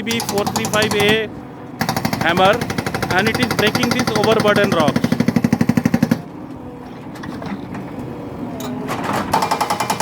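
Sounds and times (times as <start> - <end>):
hydraulic breaker hammering rock: 0.0 - 6.2, 9.2 - 10.0.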